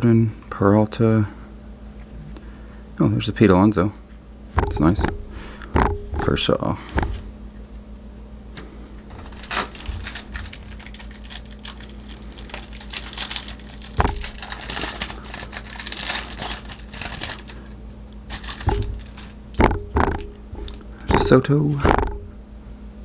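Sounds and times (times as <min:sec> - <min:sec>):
card pack wrapper crinkling: 0:09.1 - 0:19.6.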